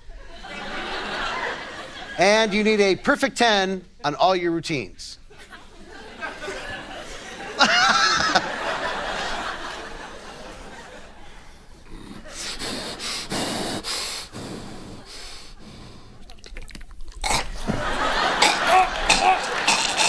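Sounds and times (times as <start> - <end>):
mouth whooshes and snorts: 8.8 - 20.0
mouth clicks: 9.2 - 20.0.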